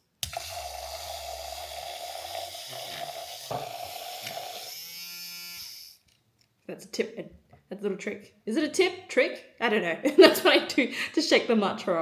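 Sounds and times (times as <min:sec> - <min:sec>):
milk frother whirring: 0:00.2 - 0:06.0.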